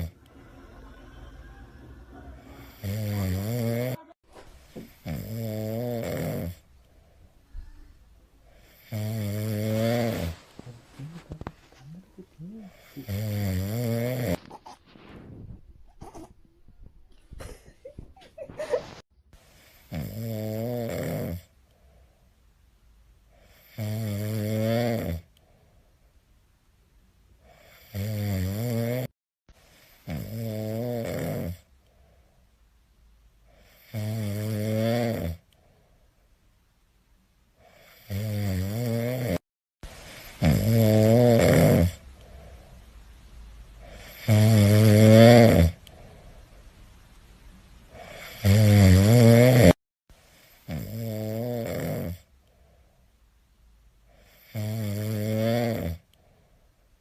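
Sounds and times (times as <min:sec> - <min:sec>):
cat snoring: 0:00.0 - 0:01.2, 0:02.6 - 0:04.0, 0:04.9 - 0:06.6, 0:08.5 - 0:14.4, 0:19.6 - 0:21.5, 0:23.4 - 0:25.3, 0:29.7 - 0:31.6, 0:33.5 - 0:35.4, 0:37.6 - 0:39.4, 0:40.1 - 0:42.0, 0:43.8 - 0:45.8, 0:48.0 - 0:49.8, 0:50.4 - 0:52.3, 0:54.1 - 0:56.0.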